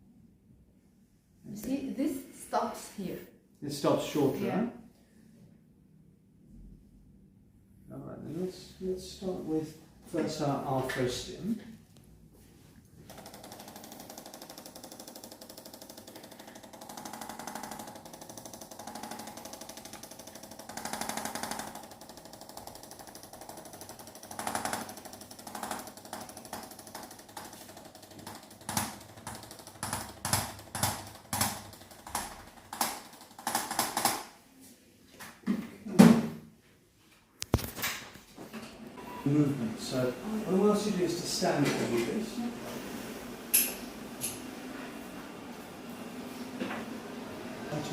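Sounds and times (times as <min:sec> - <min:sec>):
rapid machine-like tapping: 0:13.1 - 0:34.2.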